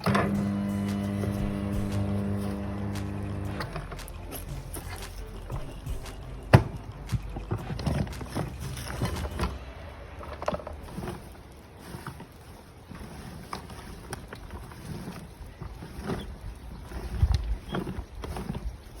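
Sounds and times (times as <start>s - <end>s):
knocks and clatters: 0.0s - 11.4s.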